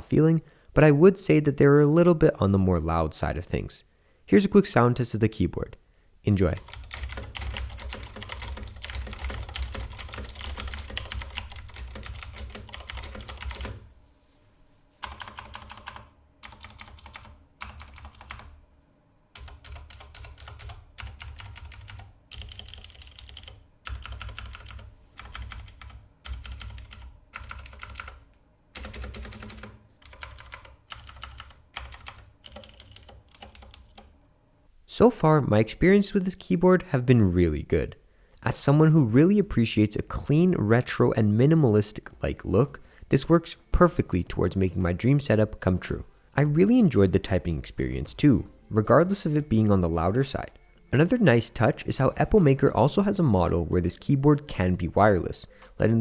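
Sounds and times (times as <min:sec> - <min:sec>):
clicky mechanical keyboard typing: 0:06.5 - 0:13.8, 0:15.0 - 0:18.5, 0:19.4 - 0:34.1.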